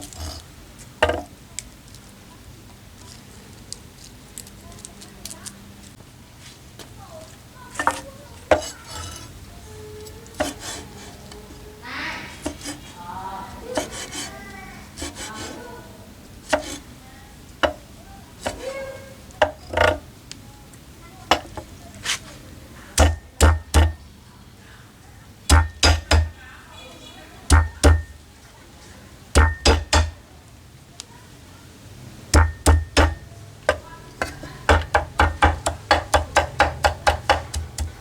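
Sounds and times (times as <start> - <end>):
utensils clinking against dishes: 7.7 - 9.4, 32.4 - 38.0
heavy thumps: 23.0 - 24.1, 25.5 - 26.4, 27.5 - 28.2, 29.4 - 30.2, 32.3 - 38.0.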